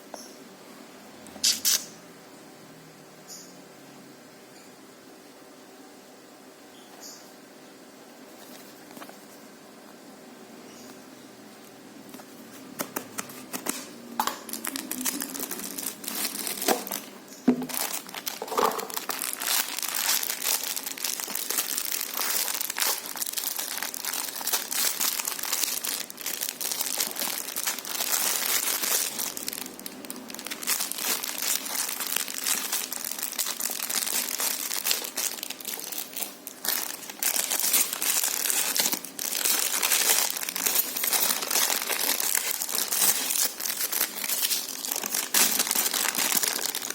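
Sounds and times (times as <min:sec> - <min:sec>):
packaging crinkling and tearing: 0:12.2 - 0:46.9.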